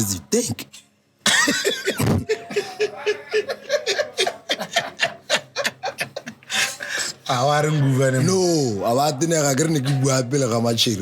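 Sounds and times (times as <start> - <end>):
men chuckling: 1.3 - 7.0
men laughing: 1.3 - 7.2.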